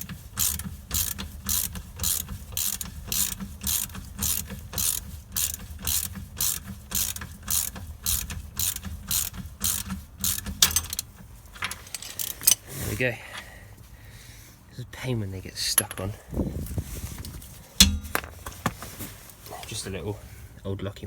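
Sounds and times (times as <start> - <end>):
hand ratchet clicking: 0.0 - 11.1, 11.8 - 12.6.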